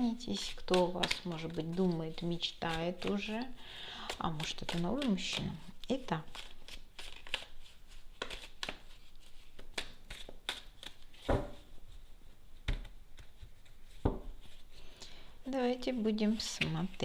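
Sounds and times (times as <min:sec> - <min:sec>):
cards thudding on table: 0:11.2 - 0:11.6.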